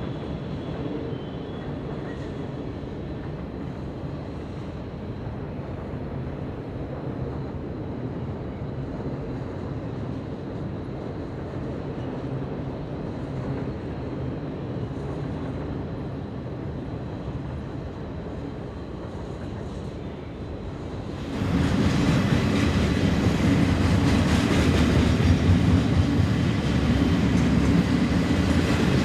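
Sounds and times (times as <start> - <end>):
distant freight train rumble: 11.3 - 29.0.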